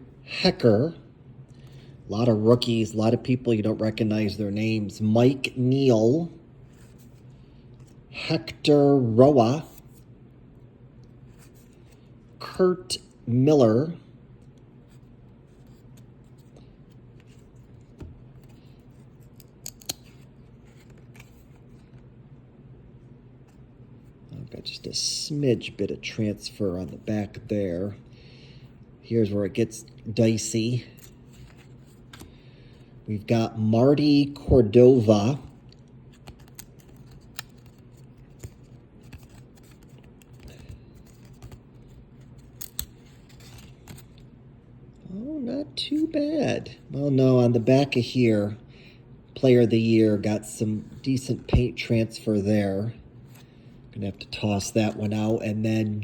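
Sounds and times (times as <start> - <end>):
cards rubbing and clicking: 14.4 - 22.1, 35.3 - 44.2.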